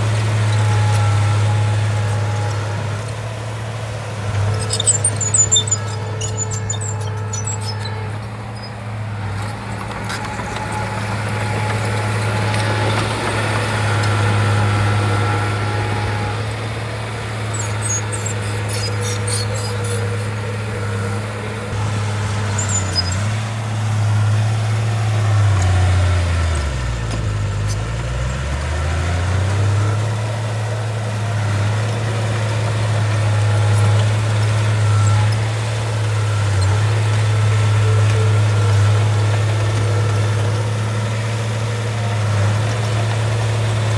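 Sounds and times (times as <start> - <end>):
bulldozer diesel engine running: 0.0 - 43.9
high-pitched squeaks: 4.3 - 8.8, 17.3 - 21.1, 21.7 - 23.5.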